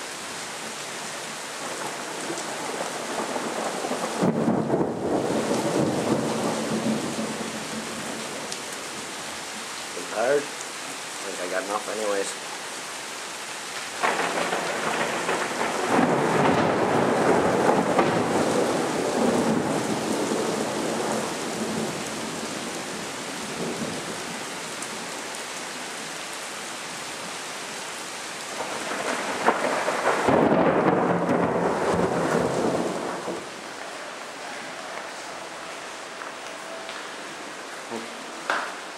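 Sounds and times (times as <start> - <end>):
heavy rain: 0.0 - 38.9
rolling thunder: 1.8 - 8.2, 14.0 - 22.0, 28.6 - 33.6
sharp thunder crack: 14.0 - 21.1, 28.6 - 33.4.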